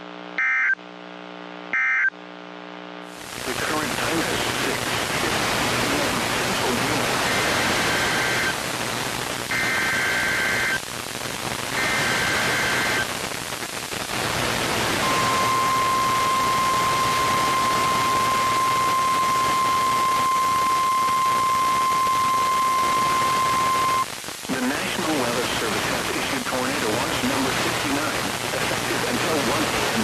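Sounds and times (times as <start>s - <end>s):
radio static: 0.0s - 30.0s
steady warning alarm tone: 15.0s - 24.0s.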